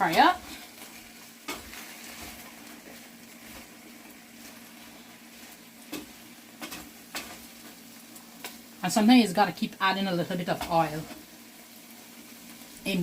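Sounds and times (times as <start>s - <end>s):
okra sizzling in oil: 0.0s - 13.0s.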